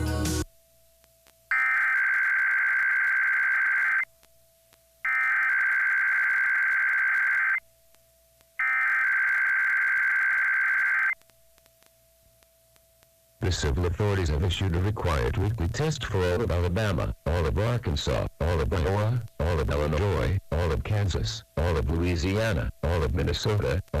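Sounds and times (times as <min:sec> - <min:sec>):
shrill digital data tones: 0:01.5 - 0:04.1, 0:05.1 - 0:07.6, 0:08.6 - 0:11.2.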